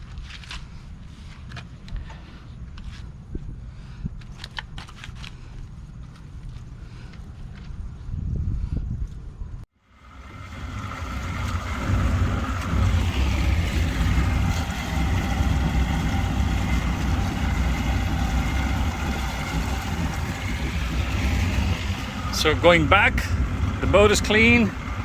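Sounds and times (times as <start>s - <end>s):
engine running: 9.8s - 25.0s.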